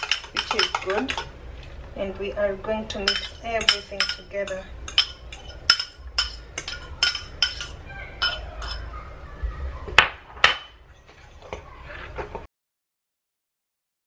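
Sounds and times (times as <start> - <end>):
spoon clinking against bowl: 0.0 - 1.3, 3.0 - 8.9
spoon knocking on bowl: 3.0 - 8.8.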